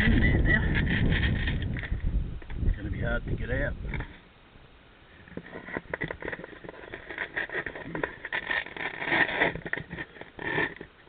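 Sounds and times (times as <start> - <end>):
hands handling battery packs: 5.3 - 11.0.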